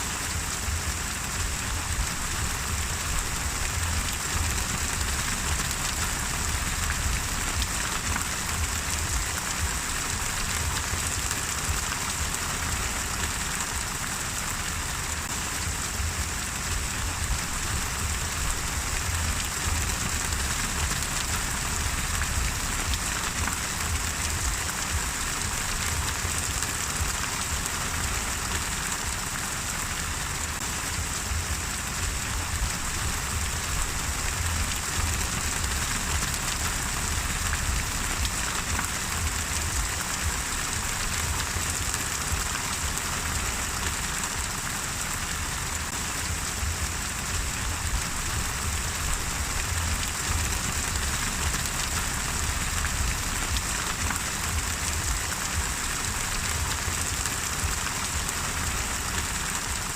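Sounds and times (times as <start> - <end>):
rain pattering: 0.0 - 59.9
low rumble: 0.2 - 11.9, 15.6 - 26.6, 30.9 - 42.0, 46.2 - 56.8.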